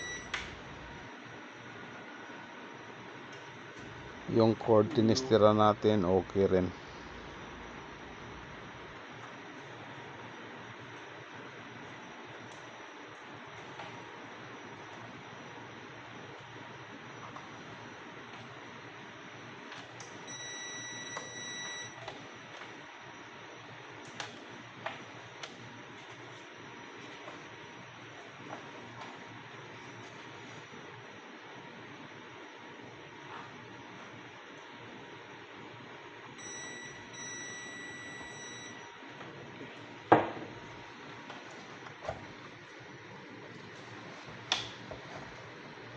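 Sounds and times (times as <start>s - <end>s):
multimeter continuity beep: 0.0s - 0.4s, 20.2s - 22.1s, 36.4s - 39.0s.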